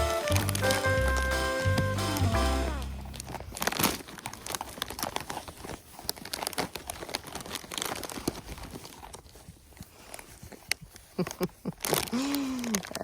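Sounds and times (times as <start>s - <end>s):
plastic bag crinkling: 2.8s - 13.0s
animals feeding clicks and knocks: 3.2s - 13.0s.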